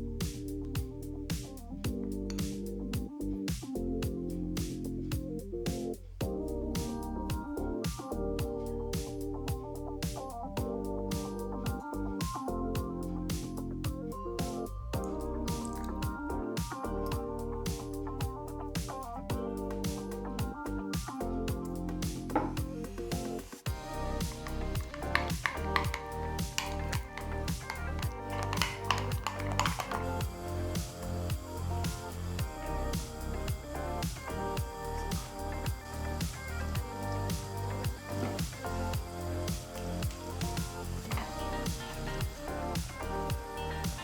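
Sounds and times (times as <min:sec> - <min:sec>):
crisp high percussion: 0:00.0 - 0:44.0
kick drum beat: 0:07.3 - 0:10.8, 0:11.7 - 0:14.0, 0:16.0 - 0:18.4, 0:23.7 - 0:44.0.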